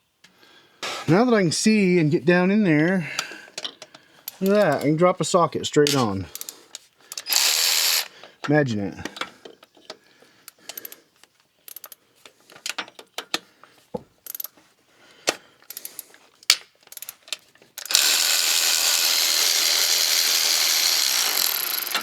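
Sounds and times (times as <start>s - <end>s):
socket ratchet clicking: 4.3s - 4.9s, 5.8s - 8.1s, 14.3s - 14.5s, 16.9s - 22.0s.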